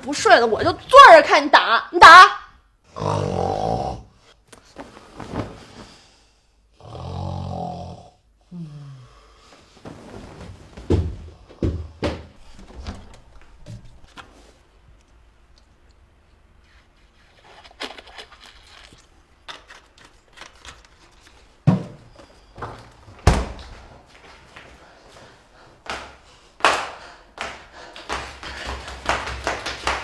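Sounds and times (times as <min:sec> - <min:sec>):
rustling: 0:04.6 - 0:06.0.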